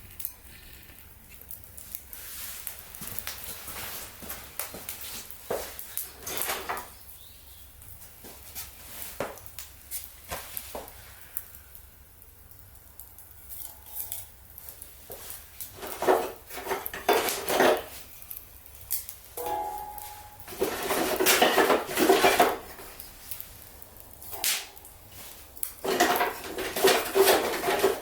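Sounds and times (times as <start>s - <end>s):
metal and wood clinking and knocking: 6.2s - 6.9s, 15.7s - 18.0s, 19.4s - 23.0s, 25.8s - 28.0s.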